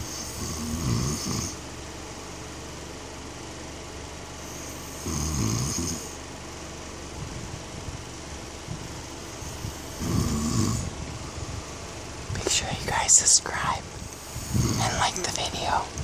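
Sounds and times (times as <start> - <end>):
man snoring: 0.0 - 1.6, 4.4 - 6.1, 9.4 - 10.9, 14.3 - 15.2.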